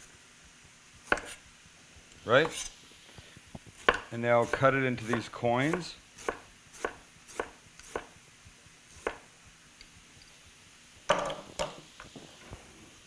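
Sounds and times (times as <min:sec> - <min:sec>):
knife chopping on cutting board: 0:01.0 - 0:01.4, 0:02.3 - 0:02.7, 0:03.6 - 0:08.2, 0:08.9 - 0:09.3
knife clatter and knock: 0:11.1 - 0:11.8.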